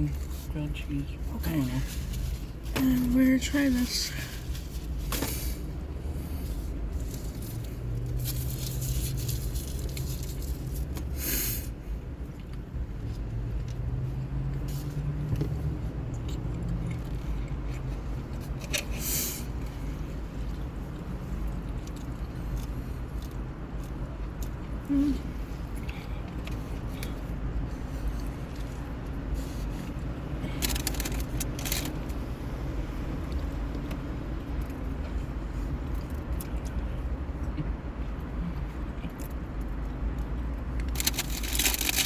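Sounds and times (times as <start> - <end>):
food wrapper rustling: 7.0 - 11.0, 30.5 - 32.0, 40.8 - 42.0.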